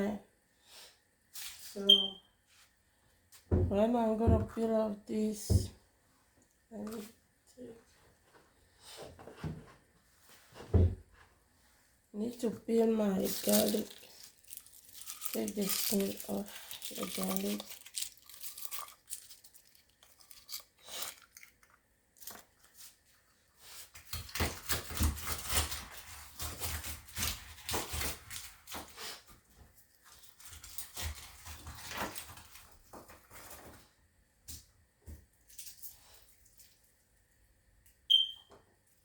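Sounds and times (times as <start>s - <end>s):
papery garlic skins crackling: 12.3s - 29.3s, 30.0s - 33.6s.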